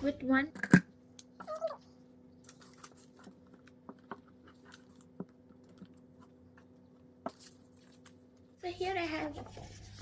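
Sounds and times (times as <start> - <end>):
paper crinkling and clicking: 2.4 - 6.3, 7.3 - 8.4.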